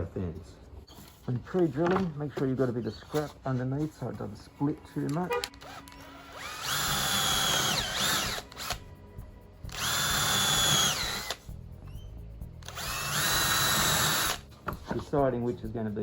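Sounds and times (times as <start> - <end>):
power drill whining: 5.2 - 8.8, 9.7 - 11.4, 12.6 - 14.4.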